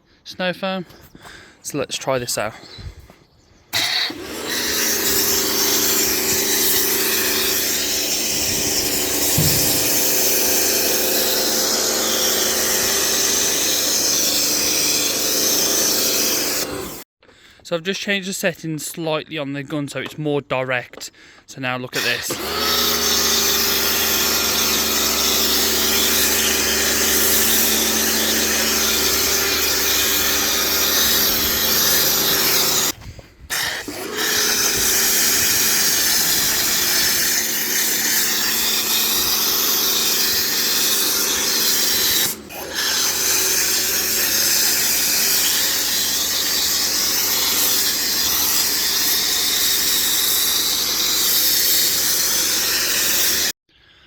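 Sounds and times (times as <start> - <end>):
foam hissing from cannon: 3.8 - 14.4, 33.5 - 53.6
pressure washer running: 3.8 - 17.0, 22.0 - 53.6.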